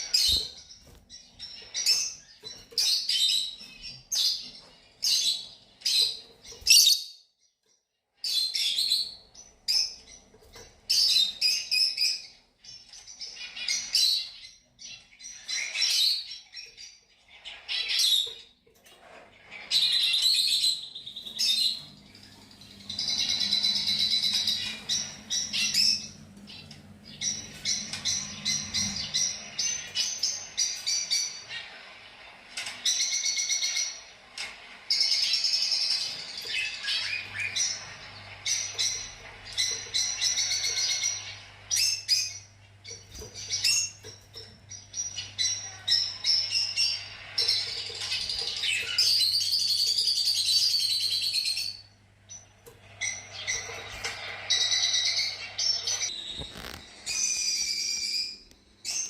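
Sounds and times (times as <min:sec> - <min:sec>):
lovebirds chirping shrilly: 0:34.9 - 0:59.0.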